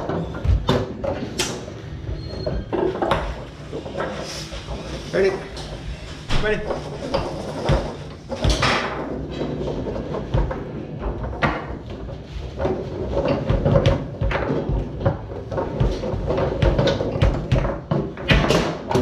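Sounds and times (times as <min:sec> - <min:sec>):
foosball rods clacking: 0:00.0 - 0:19.0
foosball ball knocks: 0:06.8 - 0:19.0.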